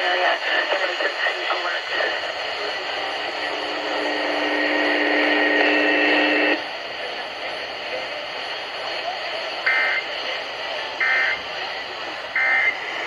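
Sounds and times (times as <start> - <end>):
radio static hiss: 0.0 - 6.6, 9.7 - 13.0
steady buzzing tone: 2.8 - 6.6.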